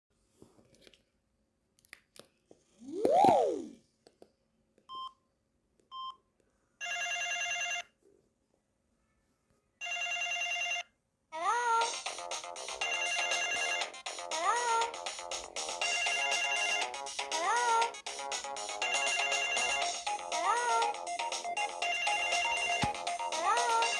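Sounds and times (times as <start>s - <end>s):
phone tone sweeping up and down: 2.8s - 3.8s
electronic ringtone melody: 12.5s - 14.3s, 15.5s - 23.9s.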